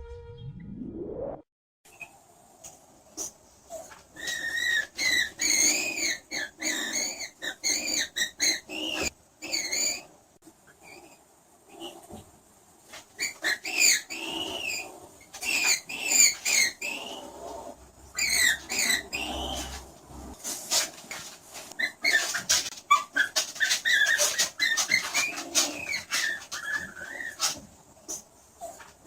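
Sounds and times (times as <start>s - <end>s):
skunk squeaking and chirping: 3.2s - 10.1s, 13.2s - 19.8s, 21.8s - 29.0s.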